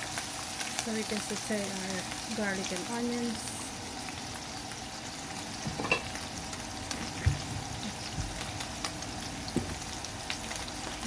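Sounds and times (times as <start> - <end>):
meat sizzling in a frying pan: 0.0 - 11.0
stirring knocks and clicks: 6.9 - 8.9, 9.5 - 9.9.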